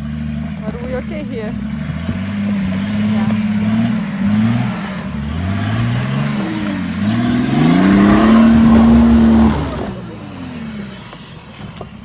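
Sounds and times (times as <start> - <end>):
diesel engine revving: 0.0 - 12.0.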